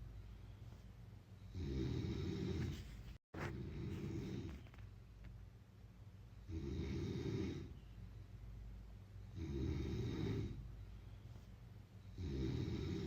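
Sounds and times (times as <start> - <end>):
person snoring: 1.5 - 2.8, 3.5 - 4.6, 6.4 - 7.8, 9.3 - 10.6, 12.1 - 13.0.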